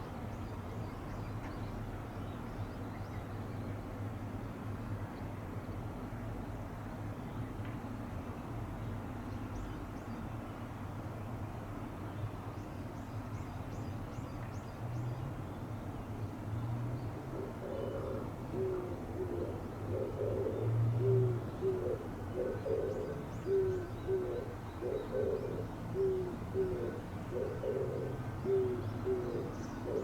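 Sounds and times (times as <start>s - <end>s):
dove cooing: 17.2s - 30.0s.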